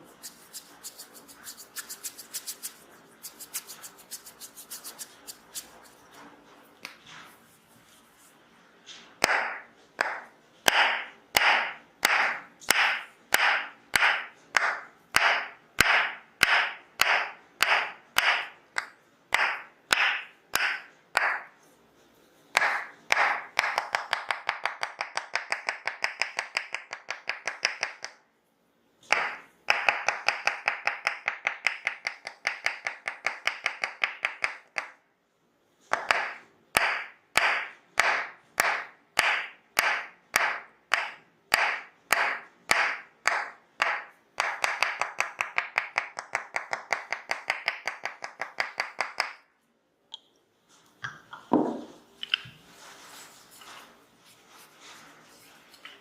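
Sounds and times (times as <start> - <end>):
wooden mallet tapping wooden wedge: 9.2 - 21.5, 22.6 - 28.2, 29.1 - 35.0, 35.9 - 49.4.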